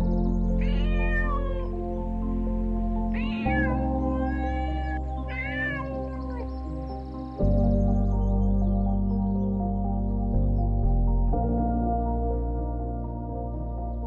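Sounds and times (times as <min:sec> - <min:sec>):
background music with held chords: 0:00.0 - 0:14.0
cat meowing: 0:00.5 - 0:07.2.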